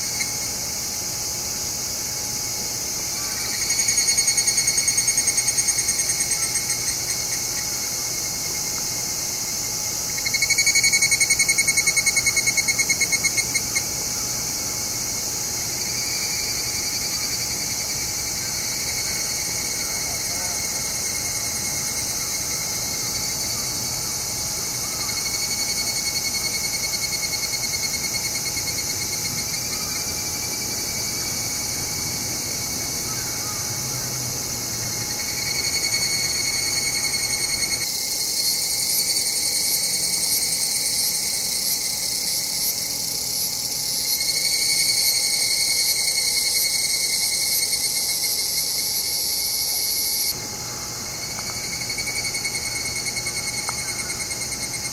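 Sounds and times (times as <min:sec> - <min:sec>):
cicadas trilling chorus: 0:00.0 - 0:54.9.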